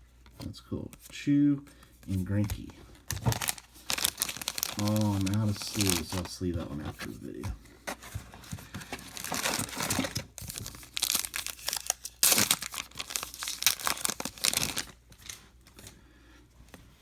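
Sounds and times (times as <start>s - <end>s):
plastic wrapper tearing and crinkling: 2.5s - 6.4s, 9.0s - 15.4s.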